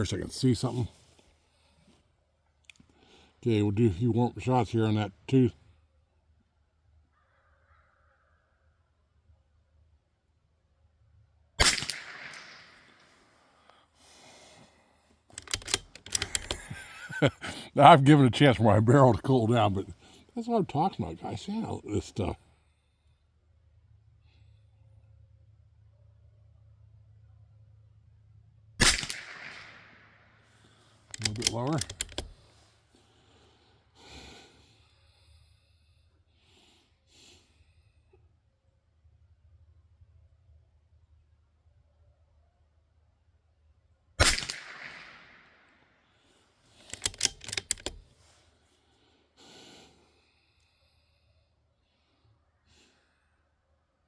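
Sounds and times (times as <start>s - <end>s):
rifle shot: 11.6s - 13.1s, 28.8s - 30.2s, 44.2s - 45.7s
person breathing softly: 13.3s - 15.3s, 33.0s - 38.1s, 48.5s - 53.6s
rifle bolt clicks: 15.3s - 16.8s, 31.1s - 32.4s, 44.2s - 45.2s, 46.8s - 48.1s.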